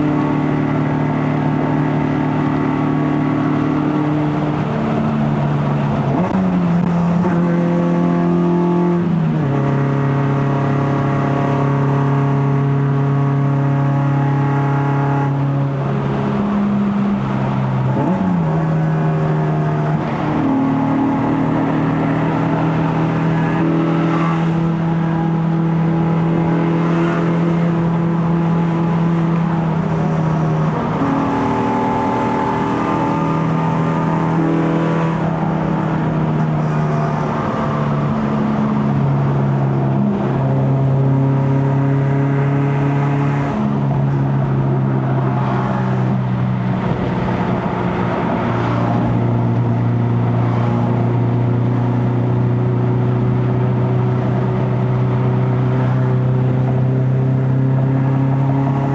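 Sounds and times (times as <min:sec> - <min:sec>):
car engine running while driving: 0:00.0 - 0:58.9.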